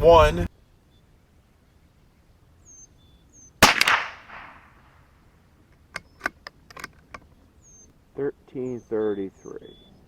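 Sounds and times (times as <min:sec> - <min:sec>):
rifle bolt clicks: 0:03.6 - 0:04.5
rifle shot: 0:03.6 - 0:04.9.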